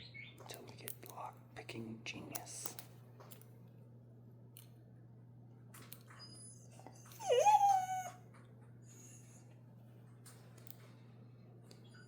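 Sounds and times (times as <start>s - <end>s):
dog whining: 6.1s - 8.3s.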